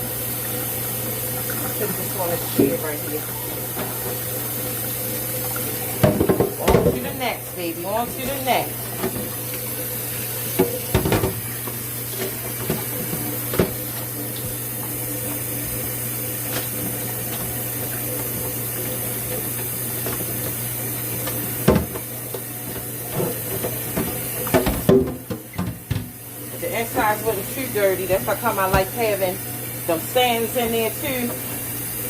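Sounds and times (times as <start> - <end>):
water running from faucet: 0.0 - 32.0
knocks of items being handled: 6.0 - 7.0.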